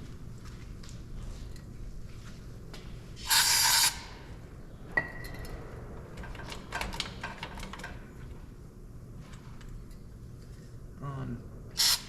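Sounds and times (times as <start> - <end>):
parts clicking and rattling: 5.2 - 8.3.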